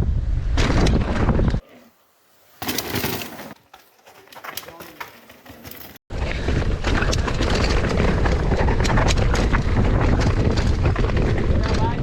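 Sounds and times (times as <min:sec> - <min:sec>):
bike tyre noise: 0:02.3 - 0:12.0
sharp rattles and knocks: 0:02.6 - 0:12.0
wind buffeting microphone: 0:06.1 - 0:12.0.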